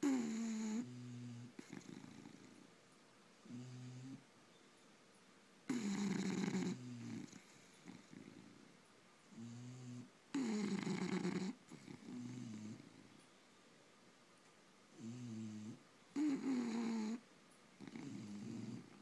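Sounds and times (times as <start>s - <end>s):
dog snoring: 0.0s - 2.7s, 3.4s - 4.2s, 5.7s - 8.7s, 9.3s - 13.1s, 14.9s - 17.2s, 17.8s - 19.0s.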